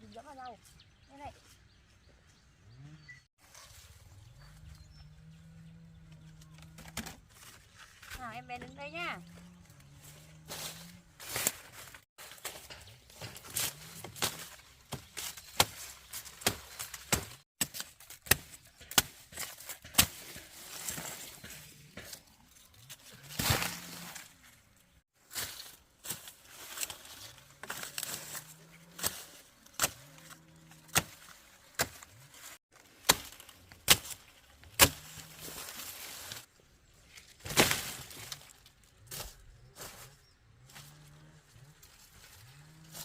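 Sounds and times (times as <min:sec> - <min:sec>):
stalks tearing and crackling: 0:10.5 - 0:24.6, 0:25.3 - 0:36.5
blade chopping sugarcane: 0:11.3 - 0:22.3, 0:23.1 - 0:24.2, 0:27.6 - 0:32.1, 0:32.8 - 0:35.7.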